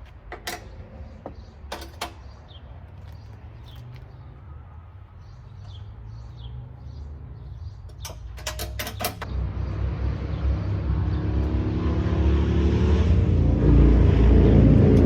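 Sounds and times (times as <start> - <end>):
vehicle engine rumble: 0.0 - 15.0
low hum: 9.3 - 15.0.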